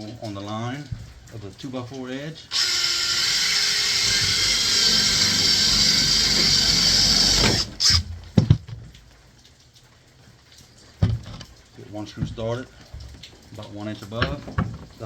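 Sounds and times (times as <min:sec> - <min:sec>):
power drill boring wood: 0:02.5 - 0:08.1
short knocks: 0:02.6 - 0:09.0.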